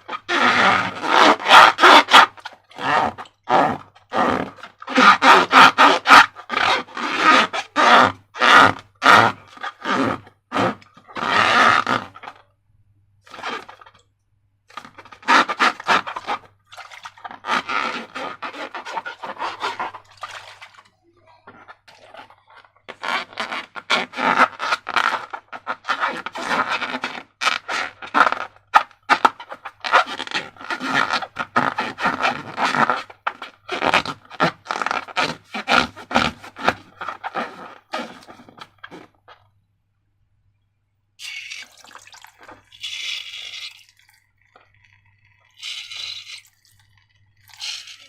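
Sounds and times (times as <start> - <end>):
slime squelching: 13.3 - 23.6, 41.2 - 48.0.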